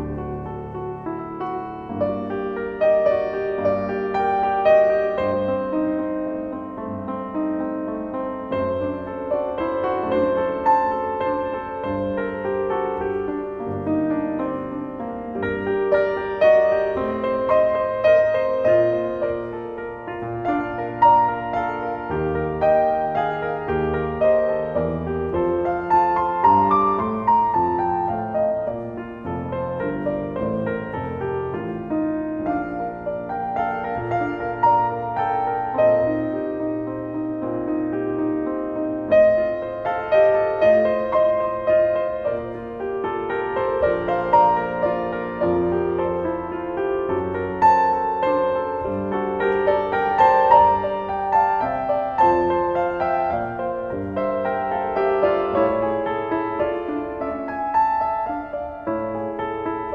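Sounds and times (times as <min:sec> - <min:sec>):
slow gentle piano music: 0:00.0 - 0:59.9.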